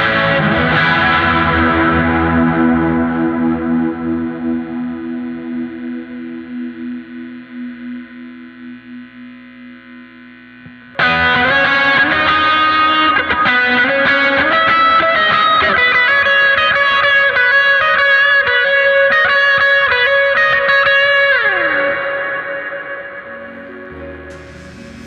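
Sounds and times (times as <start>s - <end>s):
electric guitar lead with drive: 0.0s - 8.9s, 10.6s - 25.0s.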